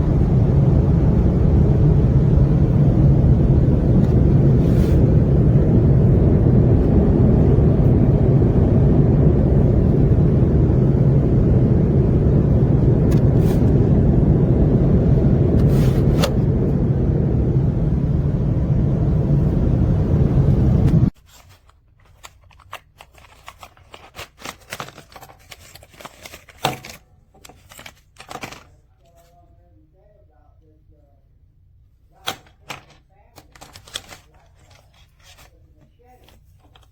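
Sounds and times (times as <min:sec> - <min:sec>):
airliner cabin drone: 0:00.0 - 0:21.2
faint clicks and rustles: 0:21.2 - 0:29.6, 0:32.4 - 0:36.9.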